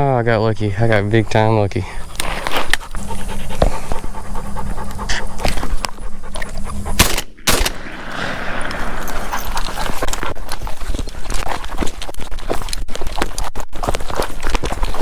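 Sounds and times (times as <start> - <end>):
heavy panting: 0.7 - 7.2, 8.3 - 12.4
crackling and rustling of weeds: 8.8 - 15.0.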